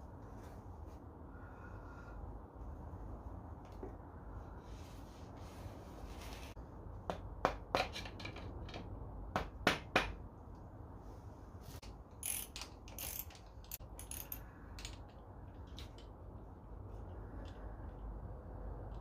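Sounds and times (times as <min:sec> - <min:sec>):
ratchet wrench clicking: 0:12.1 - 0:15.0.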